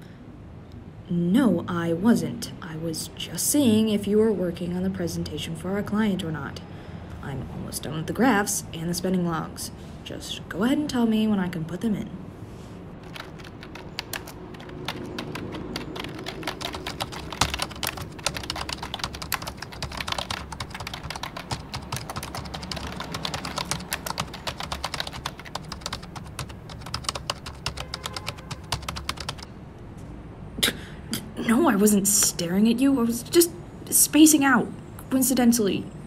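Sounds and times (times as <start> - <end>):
low background hum: 0.0 - 36.0
rapid keyboard typing: 13.0 - 29.5.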